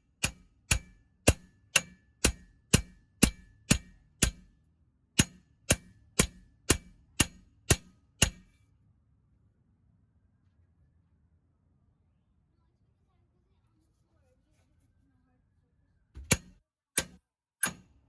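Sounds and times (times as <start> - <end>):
hammer clanging on steel: 0.2 - 4.4, 5.2 - 8.5, 16.2 - 17.9.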